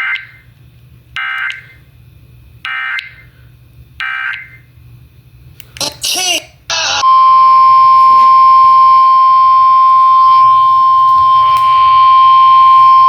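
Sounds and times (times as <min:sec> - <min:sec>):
steady warning alarm tone: 0:02.6 - 0:03.2, 0:06.7 - 0:13.0.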